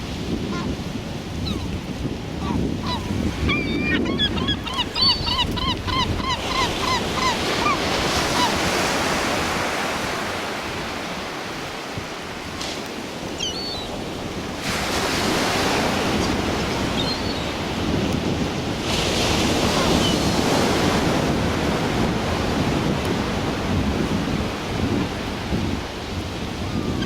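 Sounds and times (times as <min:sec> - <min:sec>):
surf washing on shore: 0:00.0 - 0:27.0
wind on microphone: 0:00.0 - 0:27.0
gull calling: 0:02.4 - 0:08.7.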